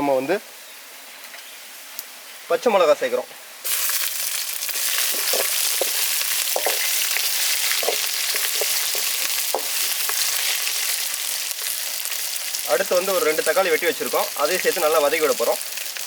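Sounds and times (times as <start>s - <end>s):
onions sizzling in hot oil: 3.6s - 16.0s
spatula scraping a pan: 4.7s - 10.7s.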